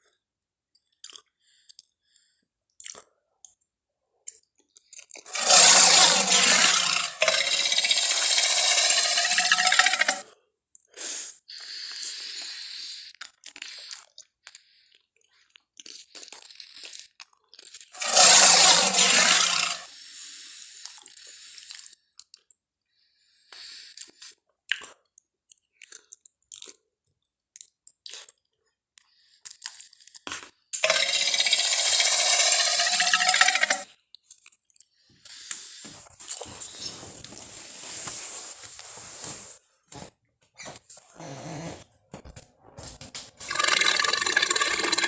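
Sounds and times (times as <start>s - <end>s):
crunching and chewing: 0.8s - 3.6s, 4.2s - 10.9s, 13.1s - 19.9s, 20.8s - 22.6s, 23.6s - 30.9s, 33.8s - 37.5s
dinosaur roar: 5.3s - 10.1s, 18.0s - 19.9s.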